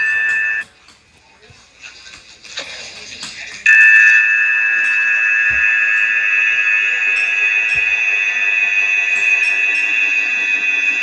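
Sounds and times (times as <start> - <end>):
high-pitched electronic alarm tone: 0.0 - 0.6, 3.7 - 11.0.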